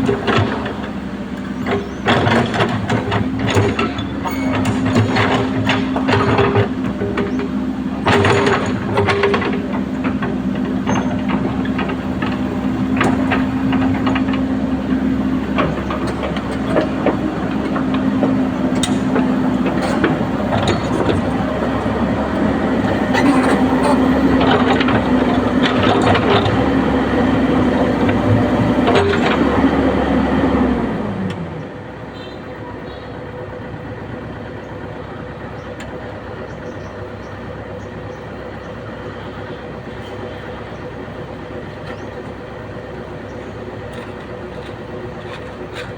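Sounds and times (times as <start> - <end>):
excavator diesel engine running: 0.0 - 45.9
metallic clanks and knocks: 1.6 - 14.5, 15.5 - 21.8.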